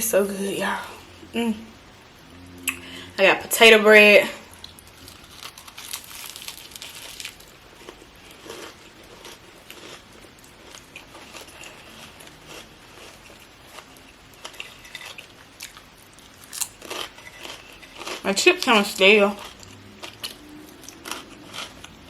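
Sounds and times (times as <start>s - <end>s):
mouth clicks: 2.6s - 3.0s
person chewing crunchy food: 4.5s - 22.0s.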